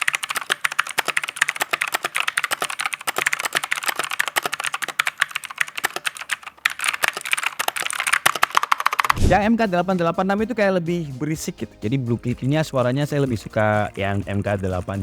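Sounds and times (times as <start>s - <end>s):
clicky mechanical keyboard typing: 0.0s - 9.2s.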